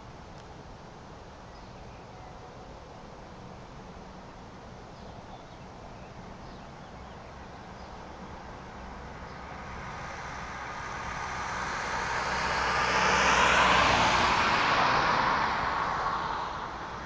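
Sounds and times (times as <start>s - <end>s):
car driving past: 9.1s - 17.0s.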